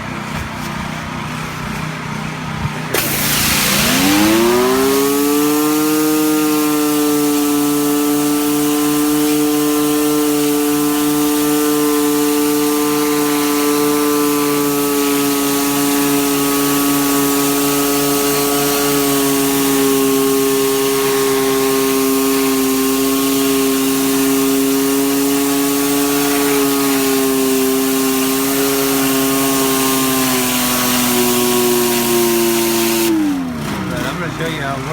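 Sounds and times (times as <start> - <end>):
pressure washer running: 0.0 - 34.9
water spraying hiss: 2.9 - 33.3.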